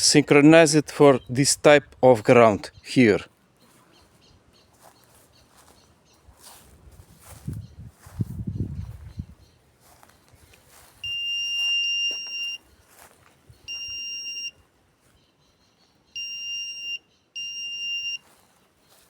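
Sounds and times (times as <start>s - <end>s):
high electronic beeps: 11.0s - 12.6s, 13.7s - 14.6s, 16.2s - 18.2s.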